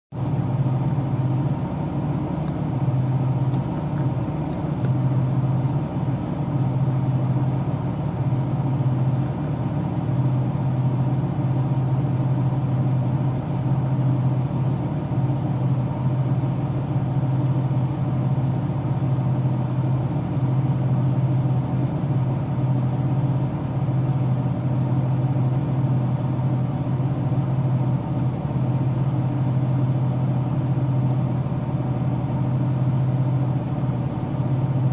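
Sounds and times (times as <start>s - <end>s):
car engine hum inside cabin: 0.1s - 34.9s.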